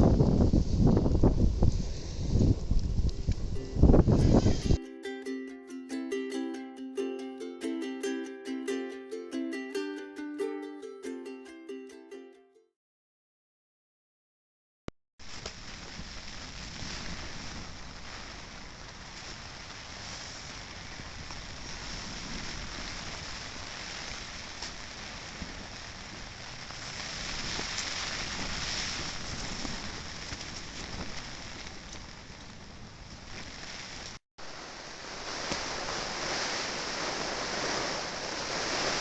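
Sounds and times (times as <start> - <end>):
gusting wind: 0.0 - 4.8, 15.5 - 39.0
heavy rain: 15.3 - 39.0.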